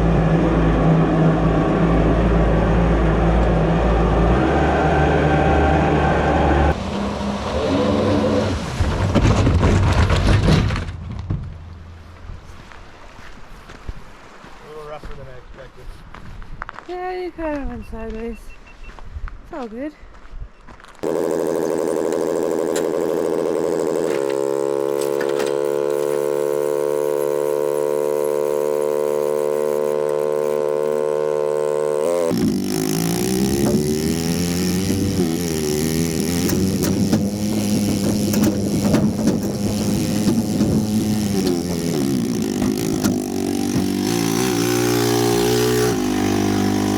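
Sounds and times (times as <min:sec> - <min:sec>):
boat engine running at high revs: 0:00.0 - 0:09.8, 0:21.0 - 0:46.9.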